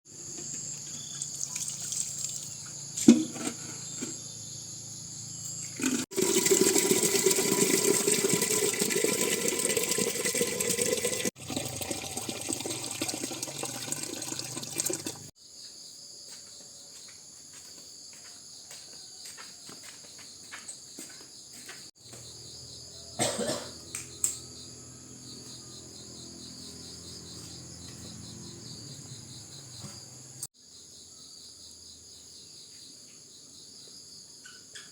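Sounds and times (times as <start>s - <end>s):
high-pitched insect chorus: 0.1s - 5.8s, 22.0s - 34.9s.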